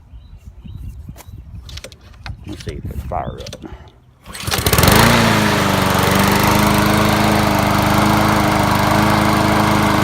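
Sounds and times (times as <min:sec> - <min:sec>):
lawn mower engine running: 0:04.2 - 0:10.0.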